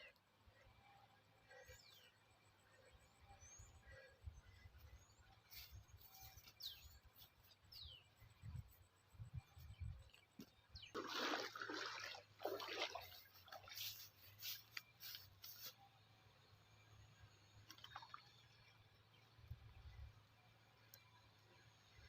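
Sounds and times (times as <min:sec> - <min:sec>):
bird chirps: 0:01.5 - 0:11.0
water splashing: 0:10.9 - 0:14.0.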